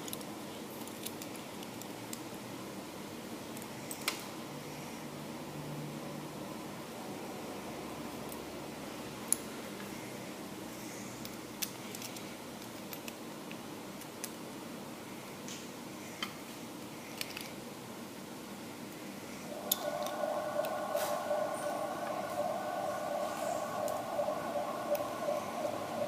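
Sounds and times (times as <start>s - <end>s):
sharp clicks and handling noises: 0.0s - 2.4s, 11.2s - 14.4s, 17.1s - 17.6s
fan-like room hum: 0.0s - 26.0s.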